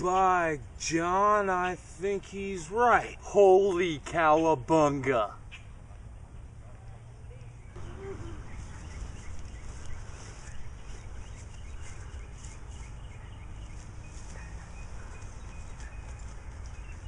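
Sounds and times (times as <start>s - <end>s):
birds chirping: 0.0s - 17.0s
steady low rumble: 5.7s - 17.0s.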